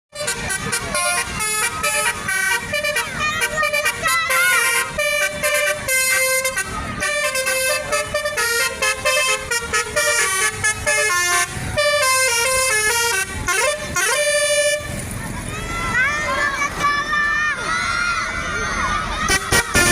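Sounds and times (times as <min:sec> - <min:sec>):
bus air horn melody: 0:00.1 - 0:15.0, 0:19.3 - 0:19.9.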